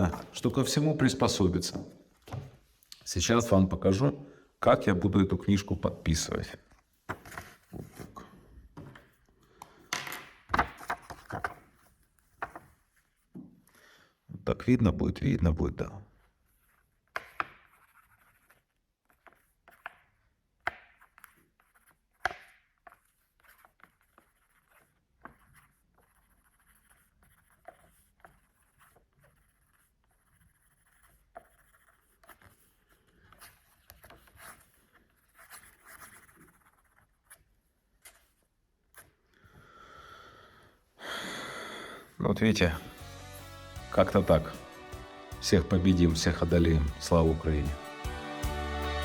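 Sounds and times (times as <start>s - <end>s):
clicks and taps handling book: 10.1s - 12.8s
pen scratching on paper: 16.2s - 20.3s, 20.9s - 39.1s.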